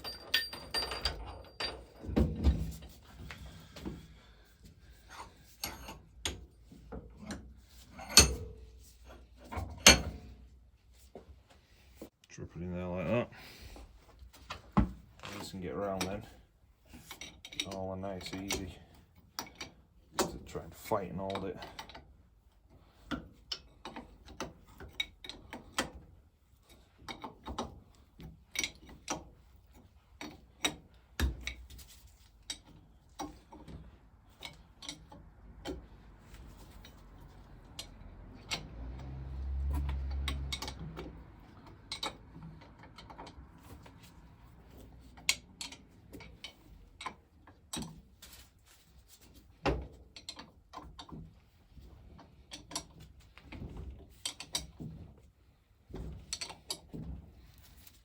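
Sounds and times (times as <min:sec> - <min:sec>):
metal parts and tools clicking: 0:00.0 - 0:03.0, 0:05.1 - 0:10.3, 0:15.2 - 0:22.2, 0:26.6 - 0:55.0.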